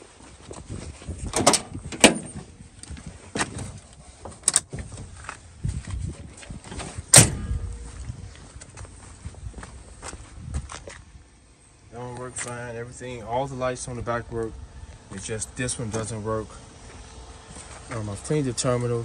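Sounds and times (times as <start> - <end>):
car door opening and shutting: 1.2 - 2.6, 6.6 - 7.8.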